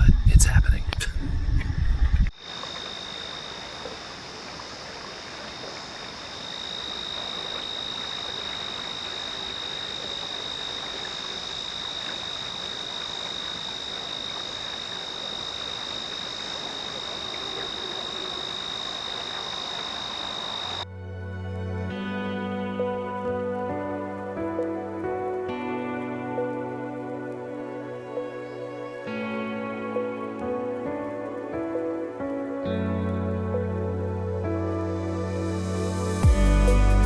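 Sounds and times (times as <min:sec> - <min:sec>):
soft hiss: 0:02.4 - 0:20.8.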